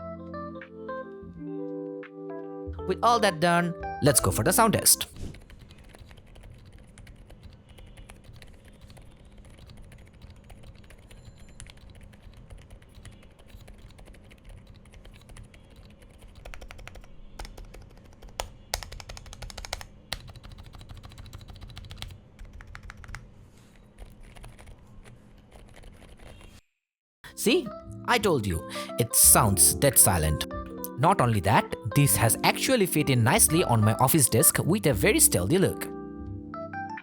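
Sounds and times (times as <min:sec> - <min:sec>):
soft mechanical keyboard typing: 0:05.3 - 0:26.6.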